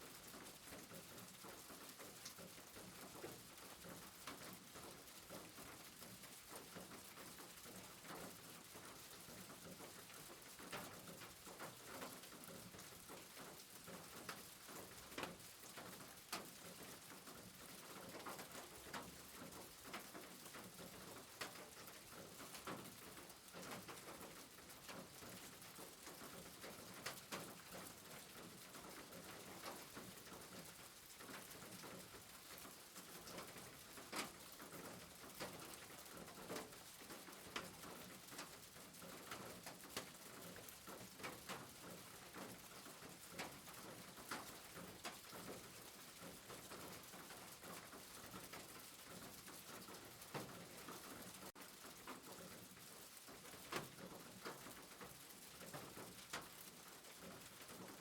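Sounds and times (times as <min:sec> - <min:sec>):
rain falling: 0:00.0 - 0:58.0.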